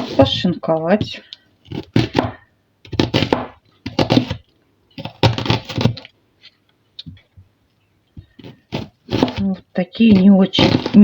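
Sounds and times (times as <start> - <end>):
knife cutting through onion: 0.0 - 4.4, 5.0 - 6.1, 8.2 - 11.0.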